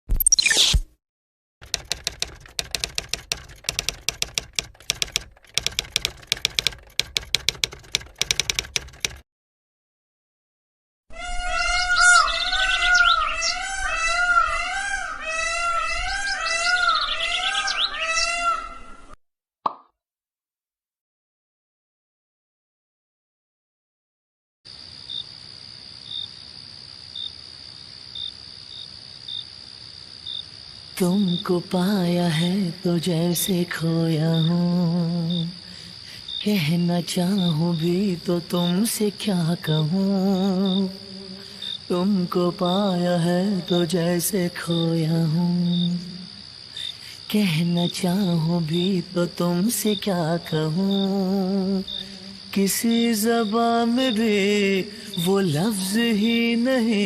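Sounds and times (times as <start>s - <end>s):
typewriter keys clacking: 1.6s - 9.2s
insect high-pitched trill: 11.2s - 18.6s, 24.7s - 57.0s
insect sharp chirps: 24.7s - 57.0s.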